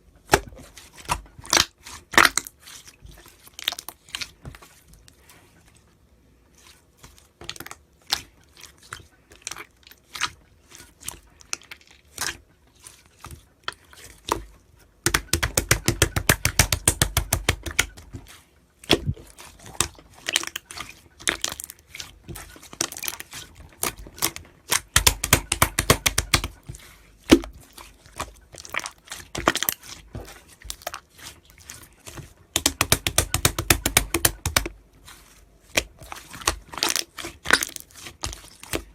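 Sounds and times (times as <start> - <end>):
slime clicking and popping: 15.1 - 18.0, 23.8 - 26.6, 32.5 - 34.7, 35.8 - 38.9.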